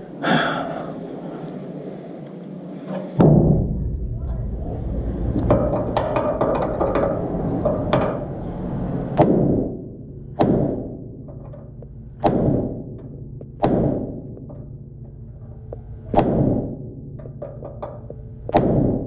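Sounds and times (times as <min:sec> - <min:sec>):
hammer striking steel punch: 0:09.2 - 0:14.8, 0:16.1 - 0:17.3, 0:18.5 - 0:19.0.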